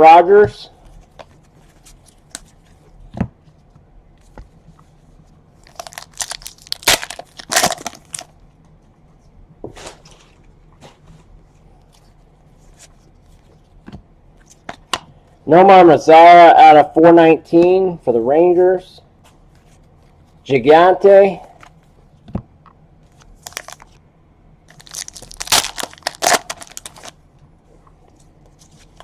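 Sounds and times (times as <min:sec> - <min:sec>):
wrapper tearing and crinkling: 0:05.6 - 0:08.3, 0:23.4 - 0:24.0, 0:24.7 - 0:27.2.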